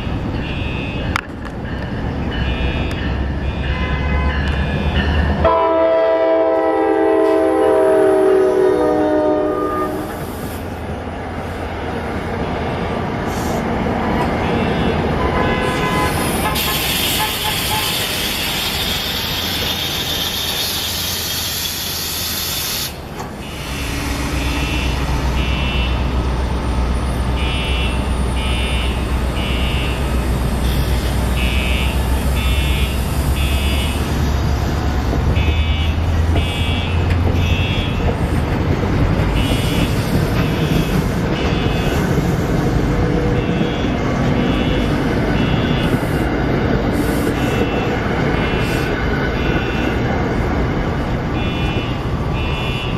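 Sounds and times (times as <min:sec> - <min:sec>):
loud hiss: 0:16.2 - 0:24.5
fire alarm beeps: 0:27.4 - 0:30.0, 0:43.4 - 0:46.0, 0:51.4 - 0:52.9.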